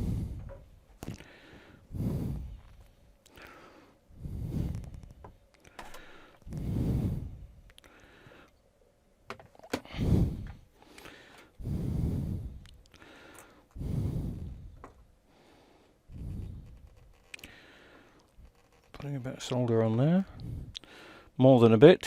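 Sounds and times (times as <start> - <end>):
person breathing heavily: 0.0 - 8.6, 9.7 - 18.4, 20.2 - 21.4.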